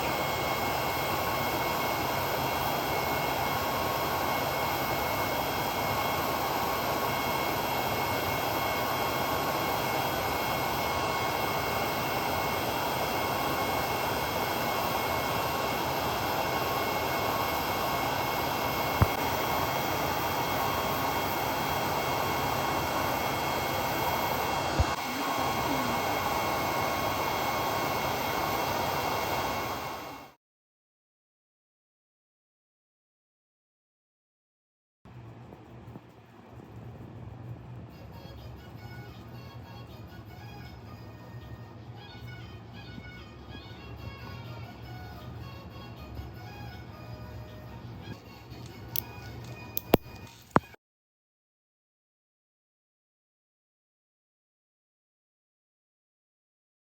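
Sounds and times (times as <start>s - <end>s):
electric nail drill whirring: 0.0s - 30.4s, 46.4s - 50.8s.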